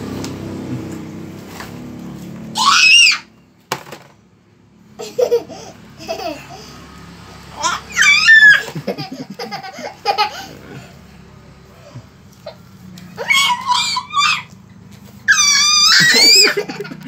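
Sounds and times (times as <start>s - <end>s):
baby squealing: 2.6s - 3.3s, 7.6s - 8.7s, 12.4s - 14.5s, 15.2s - 16.7s.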